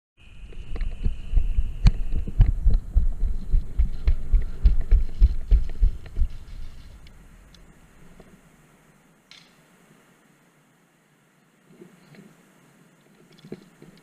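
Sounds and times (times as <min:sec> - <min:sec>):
steady high tone: 0:00.2 - 0:06.6
microphone bumps and thumps: 0:00.6 - 0:07.1.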